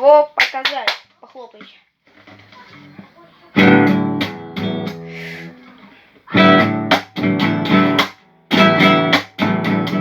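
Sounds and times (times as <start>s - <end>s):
guitar strumming: 2.3s - 10.0s.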